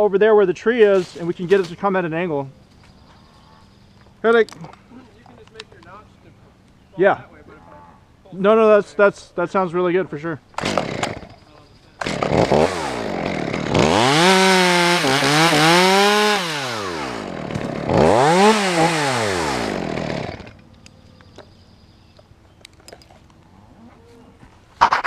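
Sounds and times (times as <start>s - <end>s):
chainsaw revving: 10.6s - 11.4s, 12.0s - 20.6s.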